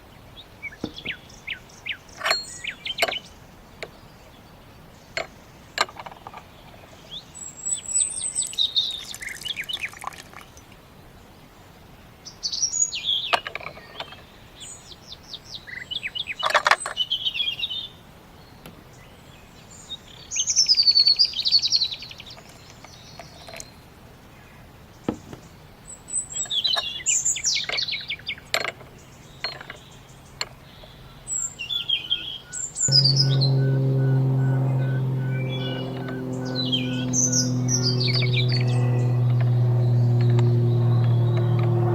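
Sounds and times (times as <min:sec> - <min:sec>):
songbirds chirping and trilling: 0:24.4 - 0:41.9
low hum with held tones: 0:32.8 - 0:41.9.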